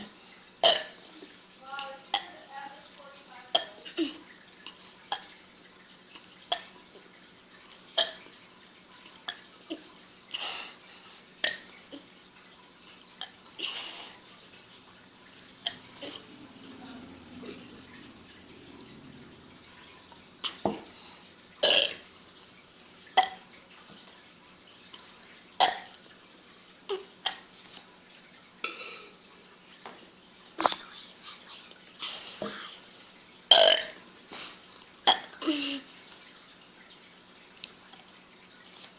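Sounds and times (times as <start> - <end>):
girl burping: 0.6 - 1.0, 21.6 - 22.0, 33.5 - 34.0.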